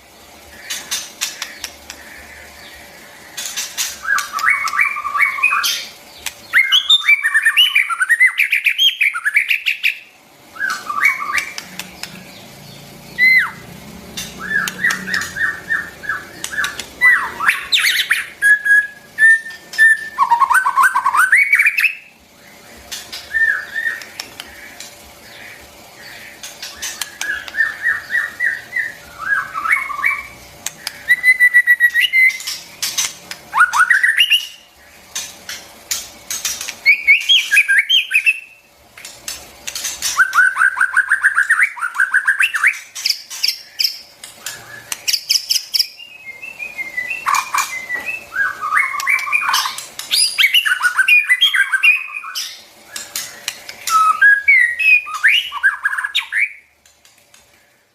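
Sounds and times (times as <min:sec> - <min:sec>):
bird singing whistled phrases: 0:04.0 - 0:05.9, 0:06.5 - 0:11.6, 0:13.2 - 0:13.6, 0:14.4 - 0:22.1, 0:23.3 - 0:24.0, 0:26.9 - 0:30.4, 0:31.0 - 0:32.5, 0:33.5 - 0:34.7, 0:36.8 - 0:38.6, 0:40.2 - 0:42.8, 0:43.5 - 0:53.1, 0:53.8 - 0:56.7.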